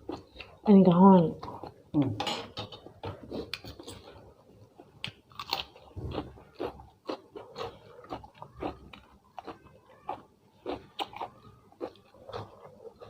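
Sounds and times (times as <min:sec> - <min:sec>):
person chewing crunchy food: 0:02.8 - 0:13.0.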